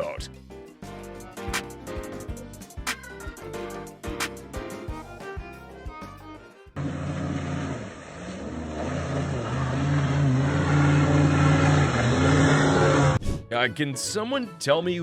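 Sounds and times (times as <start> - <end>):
boat motor running: 6.8 - 13.2
water rushing: 6.8 - 13.2.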